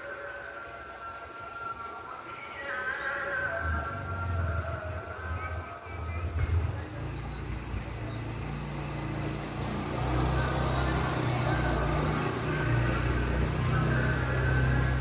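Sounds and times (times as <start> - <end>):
vehicle engine rumbling: 3.3 - 15.0.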